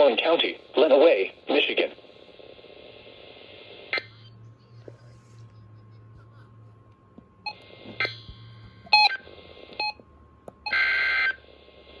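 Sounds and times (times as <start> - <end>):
steady data tone burst: 7.4 - 10.0.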